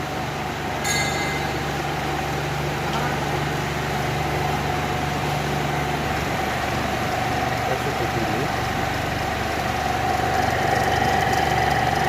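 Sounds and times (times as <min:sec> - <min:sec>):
constant machine whine: 0:00.0 - 0:12.0
ice machine humming: 0:09.2 - 0:12.0.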